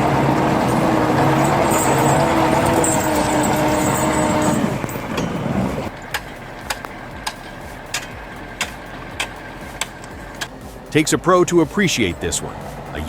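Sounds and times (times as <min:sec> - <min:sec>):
truck engine running: 0:00.0 - 0:13.0
sharp ticks: 0:05.9 - 0:10.8.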